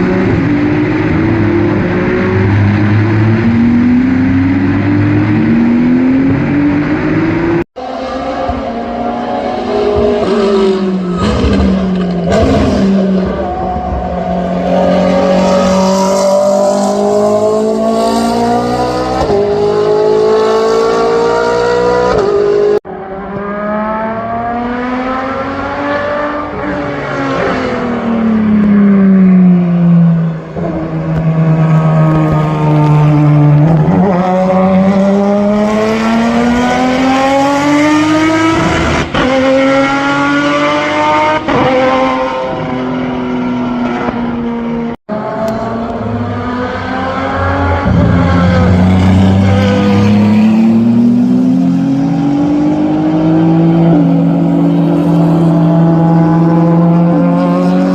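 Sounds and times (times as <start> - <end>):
racing car engines revving: 0.0 - 57.9.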